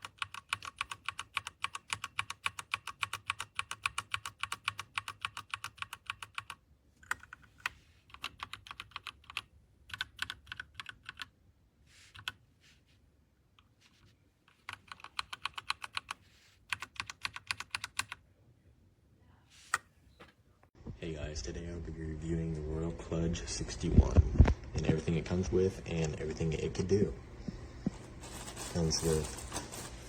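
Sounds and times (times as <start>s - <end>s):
mechanical keyboard typing: 0.0s - 11.3s, 14.5s - 18.2s.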